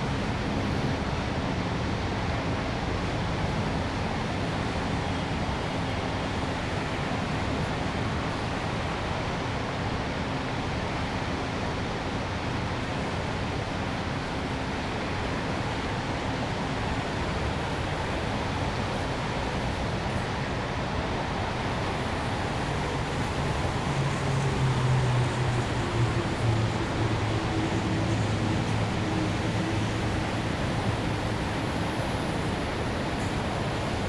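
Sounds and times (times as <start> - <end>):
traffic: 15.3 - 34.0.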